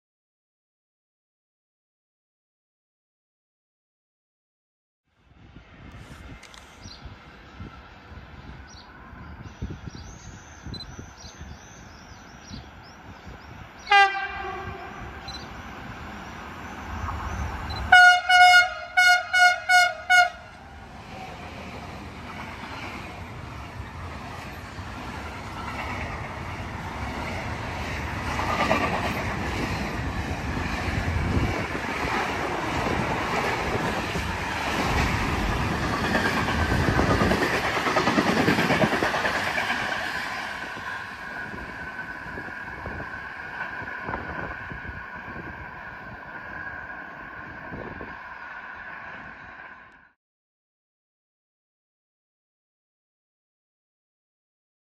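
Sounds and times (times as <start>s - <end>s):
train approaching on track: 5.2s - 50.2s
birds chirping: 8.6s - 14.2s, 14.8s - 17.7s
train horn toots: 13.8s - 15.3s, 17.9s - 20.6s.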